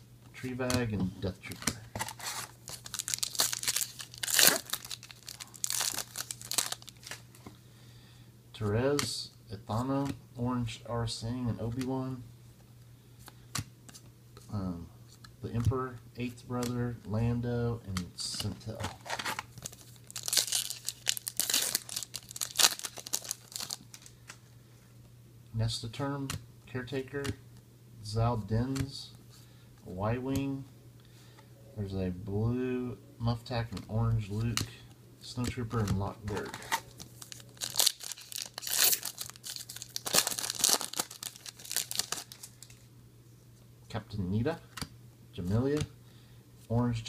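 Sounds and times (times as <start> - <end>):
wrapper crinkling: 2.0 - 7.2, 18.9 - 24.2, 36.4 - 42.9.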